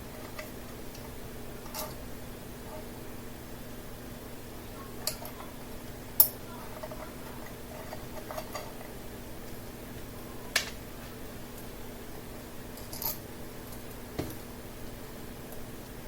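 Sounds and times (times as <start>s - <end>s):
faint steady hum: 0.0s - 16.0s
small parts clicking and tapping: 6.2s - 8.9s.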